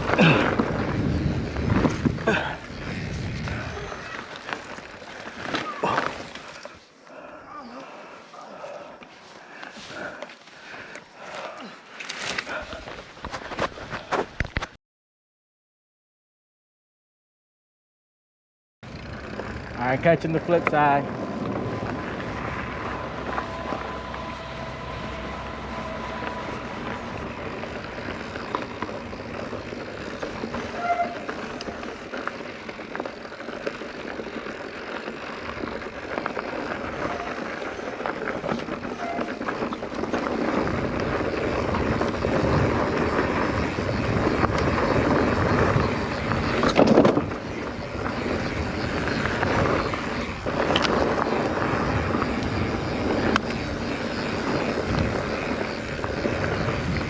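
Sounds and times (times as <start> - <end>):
wind on microphone: 0.0 - 4.3, 38.4 - 57.0
bike tyres rumbling on dirt: 0.0 - 14.8, 18.8 - 57.0.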